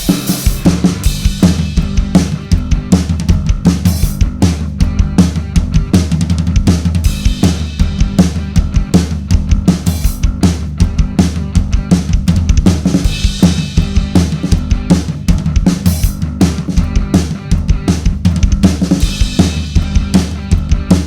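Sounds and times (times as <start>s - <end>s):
backing song with bass line: 0.0s - 21.0s
drum kit groove: 0.0s - 21.0s.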